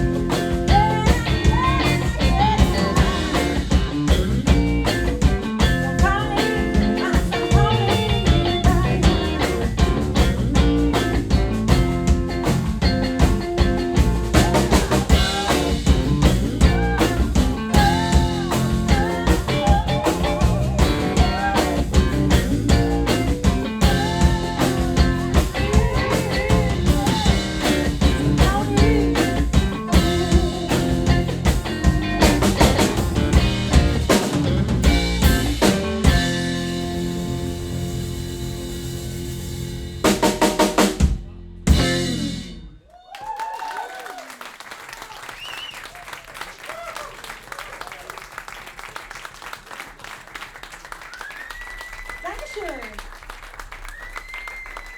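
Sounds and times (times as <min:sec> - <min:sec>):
drum kit: 0:00.0 - 0:42.8
guitar: 0:00.0 - 0:42.8
live band playing: 0:00.0 - 0:42.8.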